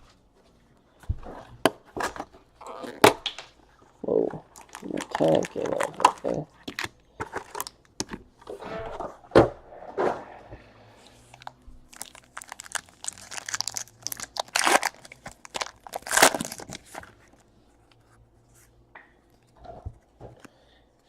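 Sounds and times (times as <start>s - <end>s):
plastic wrapping tearing and crinkling: 4.4s - 6.9s, 11.3s - 17.2s.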